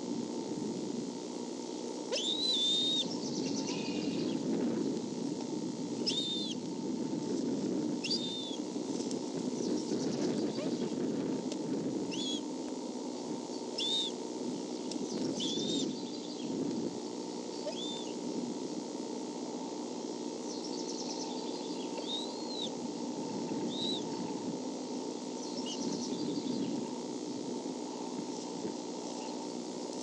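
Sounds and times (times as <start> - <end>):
low hum: 0.0 - 30.0
eaglet peeping: 2.1 - 4.5, 6.0 - 6.6, 8.0 - 8.6, 9.5 - 11.0, 12.1 - 12.5, 13.5 - 14.2, 14.8 - 16.6, 17.5 - 18.2, 20.4 - 22.8, 23.4 - 24.4, 25.4 - 26.9.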